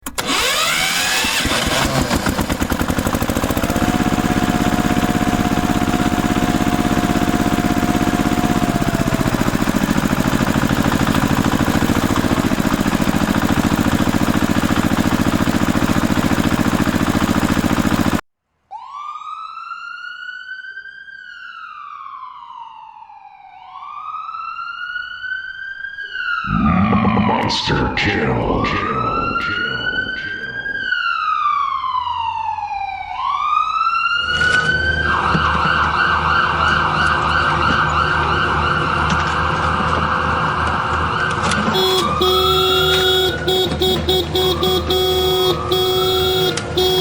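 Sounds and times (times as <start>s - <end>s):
electronic wail siren: 3.2s - 12.7s, 18.7s - 47.0s
loud harsh pulsing buzz: 41.7s - 47.0s.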